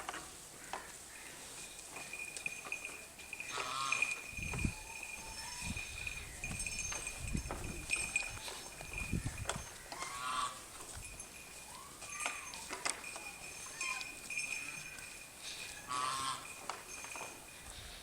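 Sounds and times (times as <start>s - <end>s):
knocks of animals moving: 0.0s - 17.8s
cattle bell ringing: 1.4s - 18.0s.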